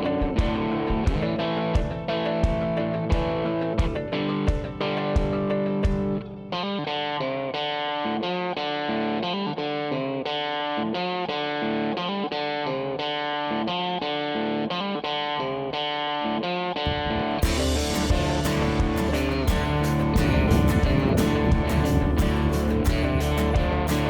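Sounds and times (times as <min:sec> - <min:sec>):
melodic electric guitar: 0:00.0 - 0:24.0
band playing: 0:16.9 - 0:24.0.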